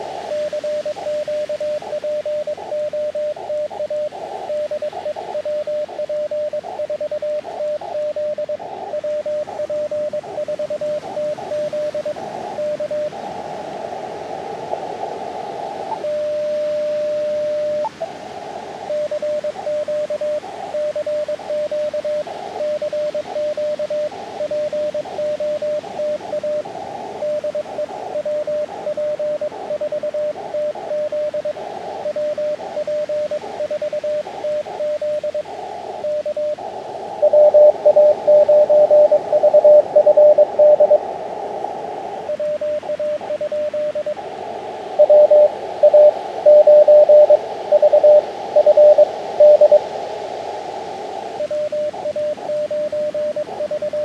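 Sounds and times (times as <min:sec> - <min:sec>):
radio hiss: 0:00.0 - 0:54.0
morse code tone: 0:37.2 - 0:41.1, 0:42.3 - 0:44.2, 0:45.0 - 0:49.9.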